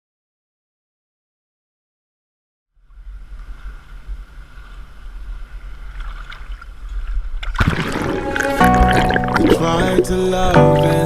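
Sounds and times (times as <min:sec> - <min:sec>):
waterfall and sea water rushing: 0:03.2 - 0:11.0
music: 0:08.2 - 0:11.0.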